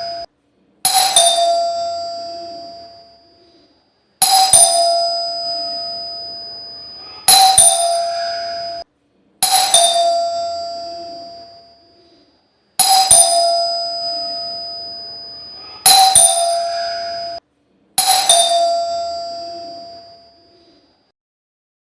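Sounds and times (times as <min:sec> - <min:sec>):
doorbell ringing: 0:00.0 - 0:00.3, 0:00.9 - 0:03.5, 0:04.2 - 0:08.8, 0:09.4 - 0:12.0, 0:12.8 - 0:17.4, 0:18.0 - 0:20.7.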